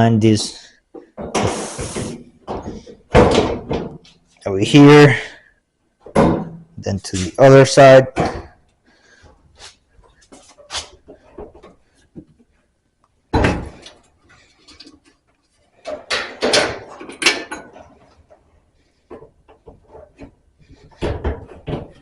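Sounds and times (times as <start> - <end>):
metal knocks and rattles: 15.8 - 18.2, 19.2 - 22.0.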